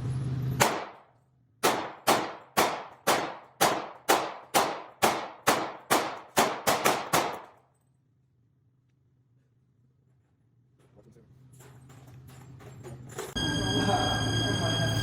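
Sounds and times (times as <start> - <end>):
gunshots echoing: 0.6 - 7.6.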